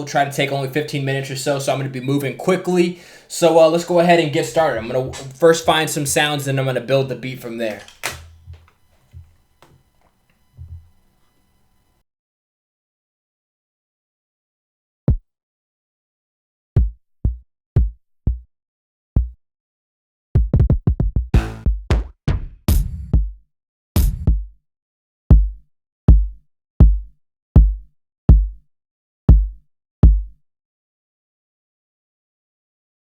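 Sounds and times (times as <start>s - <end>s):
kick drum hits: 20.4s - 23.4s, 24.0s - 24.5s, 25.3s - 28.6s, 29.3s - 30.4s.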